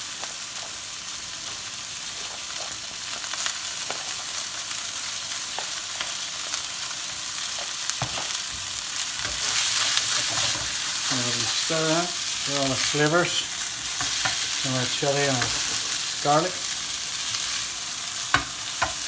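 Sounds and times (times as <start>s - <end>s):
rice sizzling in a pan: 0.0s - 19.0s
utensil scraping a pan: 9.2s - 13.1s.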